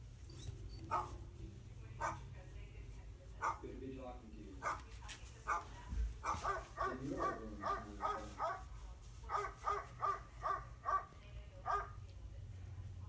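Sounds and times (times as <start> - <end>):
dog barking: 0.8 - 1.3, 2.0 - 2.3, 3.4 - 3.7, 4.6 - 4.9, 5.5 - 8.7, 9.3 - 12.0.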